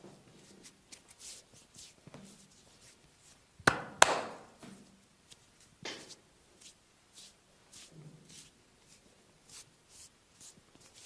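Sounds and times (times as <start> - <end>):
soft rubbing of skin: 0.3 - 3.5, 4.9 - 11.0
hands smacking bare skin: 3.7 - 4.4.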